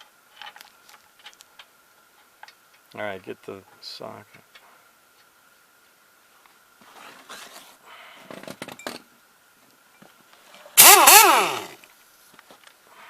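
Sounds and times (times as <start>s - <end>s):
pneumatic air wrench whirring: 10.8s - 11.8s.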